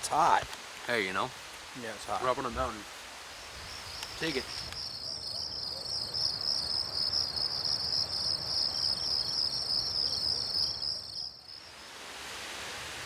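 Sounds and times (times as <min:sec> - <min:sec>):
low rustling hiss: 0:00.0 - 0:05.1
insects trilling: 0:00.0 - 0:11.9.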